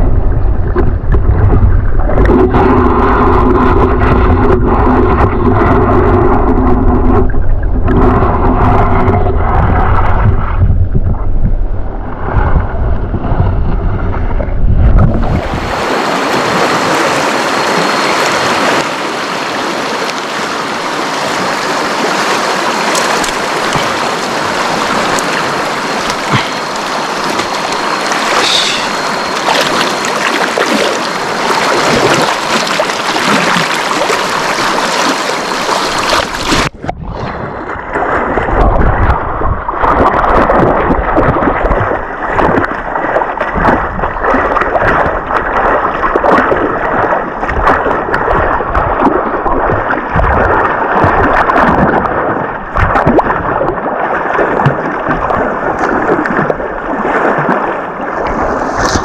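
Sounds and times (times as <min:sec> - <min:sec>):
muffled water with low rumble: 0:00.0 - 0:59.0
river rushing: 0:15.3 - 0:36.7
short splashes and knocks: 0:22.1 - 0:36.8, 0:39.8 - 0:57.6.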